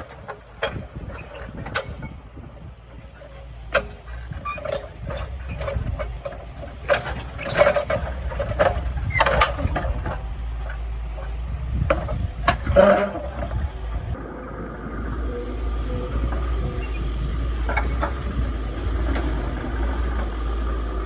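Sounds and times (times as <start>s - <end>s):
diesel engine running: 0.0s - 21.0s
metallic clanks: 3.0s - 13.6s.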